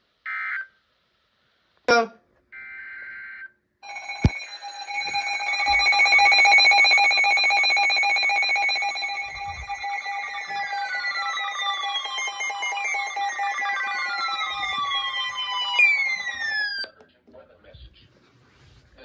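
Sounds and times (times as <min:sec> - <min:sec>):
sliding falling tones: 0:03.8 - 0:16.9
weather radio alert alarms: 0:03.8 - 0:16.9.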